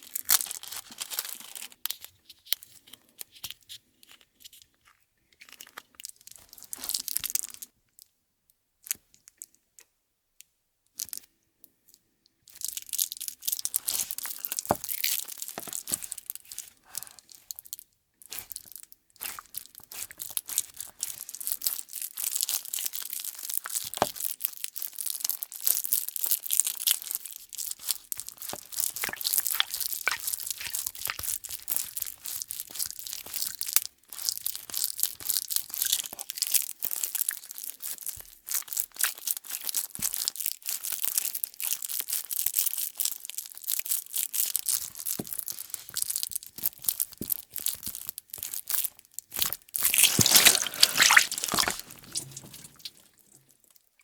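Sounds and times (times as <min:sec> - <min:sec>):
sticky tape crackling and peeling: 0:44.9 - 0:53.2.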